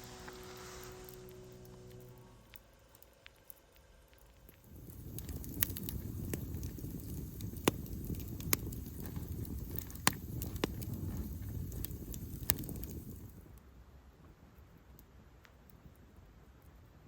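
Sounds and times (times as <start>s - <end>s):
wood crackling pops: 0.0s - 13.5s
campfire flames rustling: 0.0s - 13.6s.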